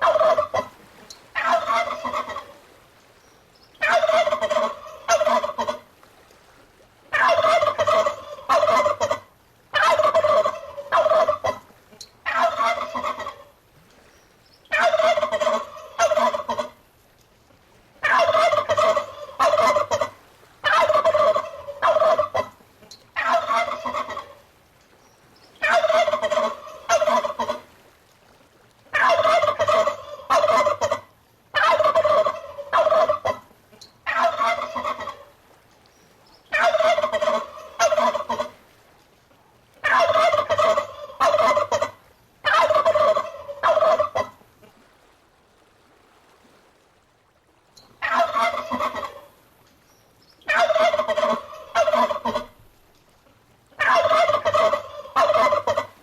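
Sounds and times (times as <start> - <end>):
turkey gobbling: 0.0 - 2.6, 3.8 - 5.8, 7.1 - 13.5, 14.7 - 16.8, 18.0 - 24.4, 25.6 - 27.6, 28.9 - 35.3, 36.5 - 38.6, 39.8 - 44.4, 48.0 - 49.3, 50.4 - 52.6, 53.8 - 56.0.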